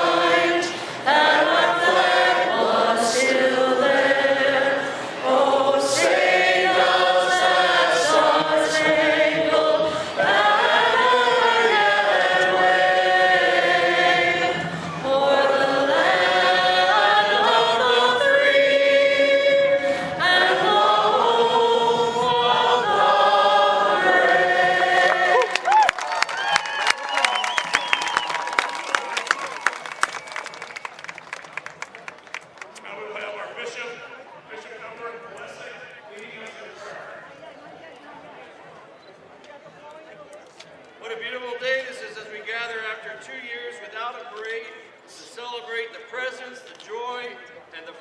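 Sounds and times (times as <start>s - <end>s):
choir of voices singing: 0.0s - 25.7s.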